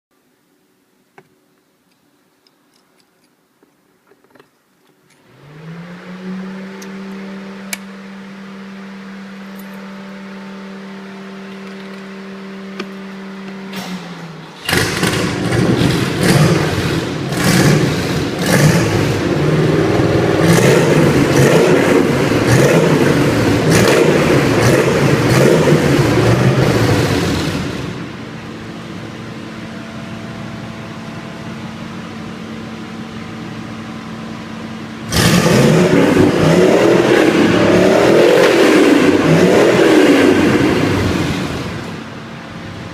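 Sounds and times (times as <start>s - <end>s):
engine revving: 5.2s - 11.4s, 12.3s - 28.3s, 35.0s - 42.2s.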